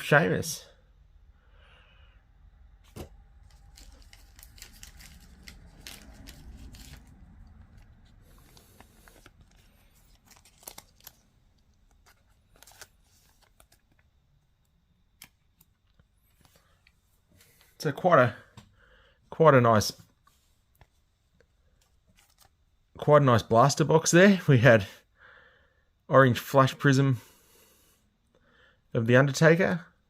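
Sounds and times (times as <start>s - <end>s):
trading cards rustling and clicking: 2.8s - 14.2s, 21.7s - 22.6s
foil wrapper crinkling: 3.4s - 14.0s, 22.1s - 22.6s.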